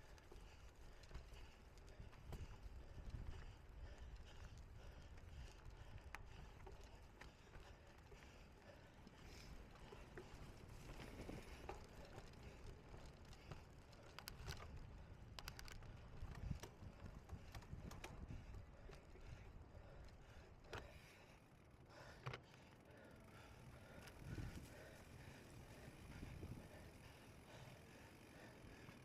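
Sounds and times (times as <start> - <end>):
bike parts rattling: 9.1 - 21.1.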